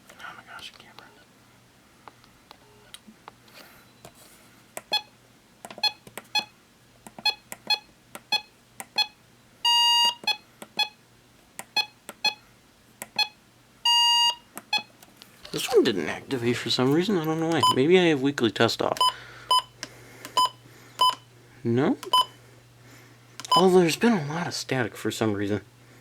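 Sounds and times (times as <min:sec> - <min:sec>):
short electronic beeps: 0:17.6 - 0:17.8.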